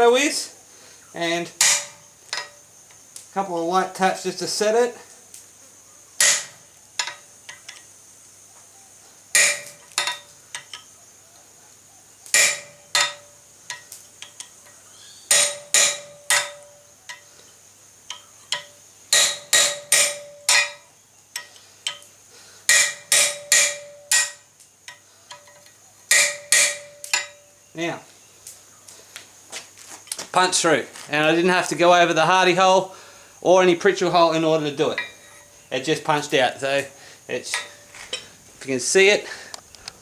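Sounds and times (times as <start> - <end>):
hammer striking punch on hot steel: 1.6 - 2.6, 6.2 - 7.2, 9.4 - 10.3, 12.3 - 13.8, 15.3 - 17.2, 18.1 - 20.9, 22.7 - 24.5, 26.1 - 27.4.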